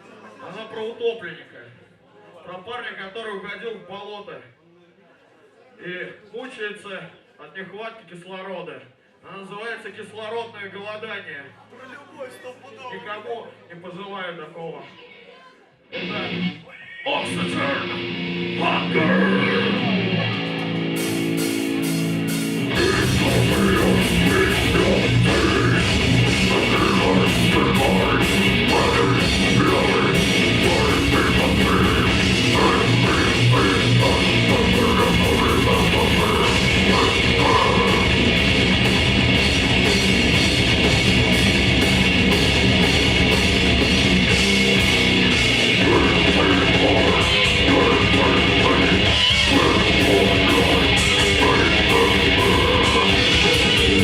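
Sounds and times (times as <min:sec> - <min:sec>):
grindcore band playing: 0:16.0 - 0:16.6, 0:17.2 - 0:54.0
rapid drum hits: 0:21.0 - 0:54.0.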